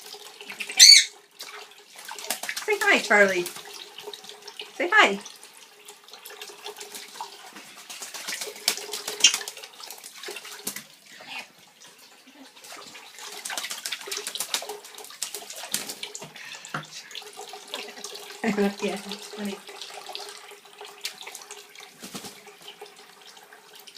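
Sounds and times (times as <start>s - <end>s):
bird splashing in water: 0.4s - 4.5s, 6.4s - 10.9s, 12.6s - 16.2s, 21.0s - 22.8s.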